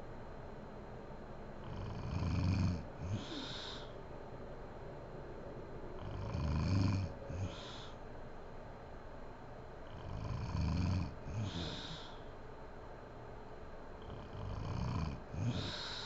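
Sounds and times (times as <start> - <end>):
woman snoring: 1.7 - 3.9, 6.0 - 7.9, 9.9 - 12.2, 14.0 - 16.0.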